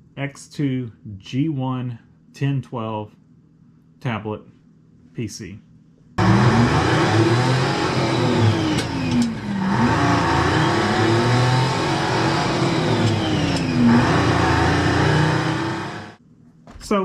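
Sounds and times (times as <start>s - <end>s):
car engine revving: 6.2s - 16.2s.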